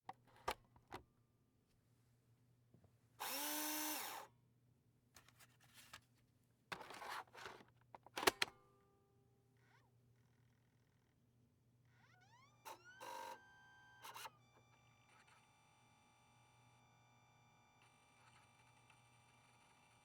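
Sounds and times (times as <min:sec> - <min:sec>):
disk drive motor whirring: 0:03.2 - 0:04.2, 0:12.0 - 0:20.0.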